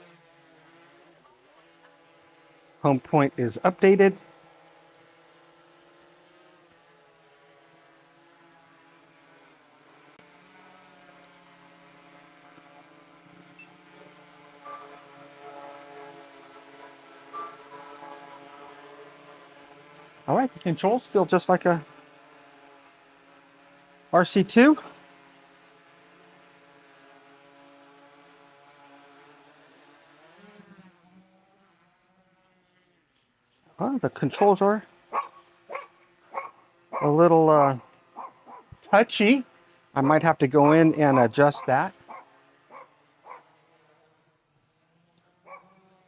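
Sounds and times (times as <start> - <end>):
drone propellers humming: 2.6 - 5.4, 9.0 - 31.5, 33.8 - 43.5.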